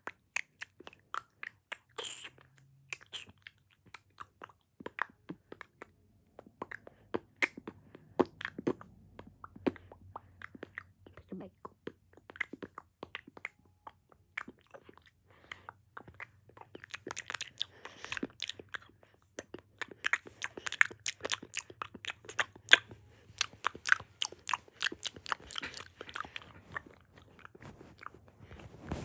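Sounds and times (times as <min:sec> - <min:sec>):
mouth clicks and smacks: 0:00.0 - 0:28.1.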